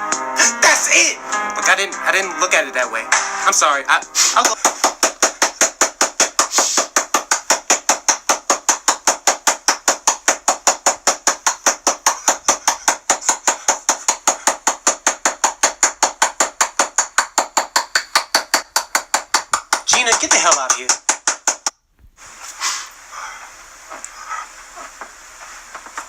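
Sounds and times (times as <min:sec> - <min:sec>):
rapid regular tapping: 0:04.2 - 0:21.8.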